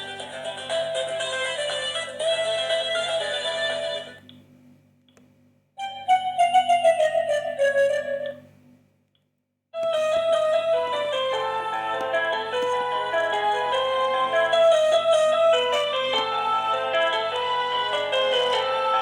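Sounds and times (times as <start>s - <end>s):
phone ringtone melodies: 9.9s - 19.0s.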